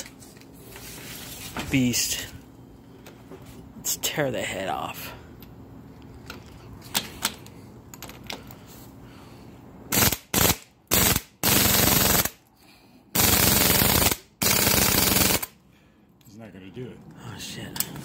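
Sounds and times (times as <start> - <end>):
pneumatic impact wrench hammering: 9.9 - 12.4, 13.1 - 15.5.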